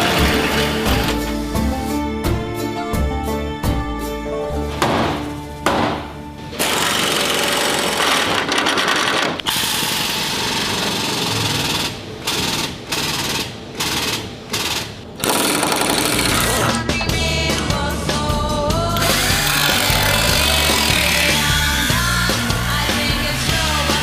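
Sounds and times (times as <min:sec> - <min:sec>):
background music: 0:00.0 - 0:08.0, 0:15.9 - 0:24.0
air tool hammering metal: 0:09.5 - 0:16.6, 0:19.0 - 0:22.0.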